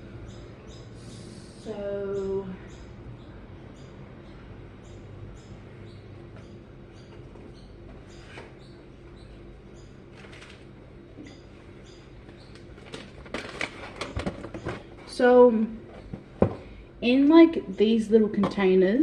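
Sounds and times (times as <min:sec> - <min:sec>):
clatter of clicks and rustling: 0:12.5 - 0:14.9.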